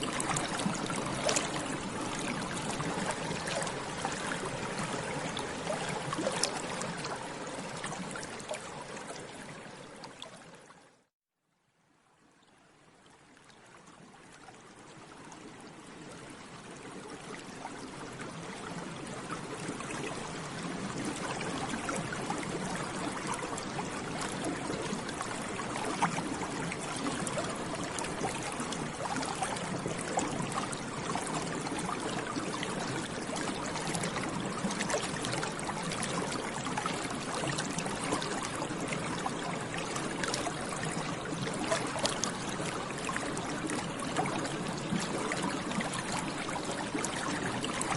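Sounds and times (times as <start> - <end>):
bubbles bubbling in water: 0.0 - 10.3, 17.8 - 47.9.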